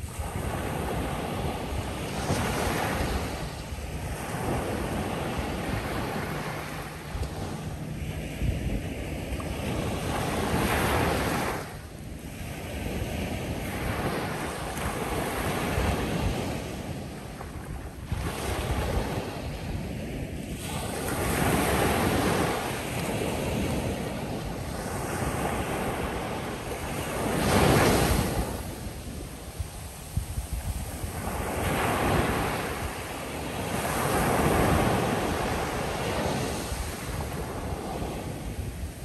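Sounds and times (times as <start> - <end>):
ocean waves breaking on beach: 0.0 - 39.0
wind rumble on microphone: 0.0 - 39.0.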